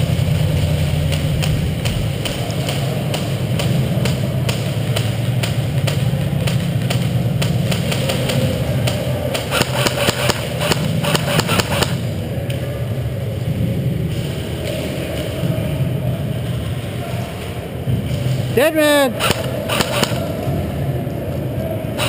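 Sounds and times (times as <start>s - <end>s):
steady low rumble: 0.0s - 22.0s
airsoft guns firing: 0.2s - 12.0s, 18.6s - 20.4s.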